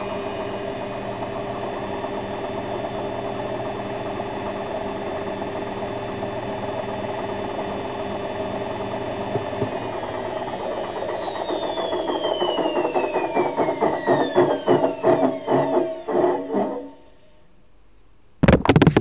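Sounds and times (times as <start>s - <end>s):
washing machine humming: 0.0s - 17.3s
high whine: 0.0s - 17.5s
fast pulsing knock: 9.3s - 16.9s.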